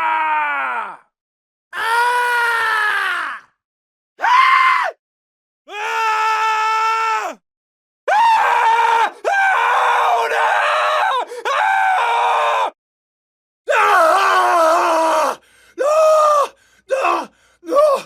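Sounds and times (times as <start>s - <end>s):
man screaming: 8.1s - 12.8s, 13.7s - 18.0s.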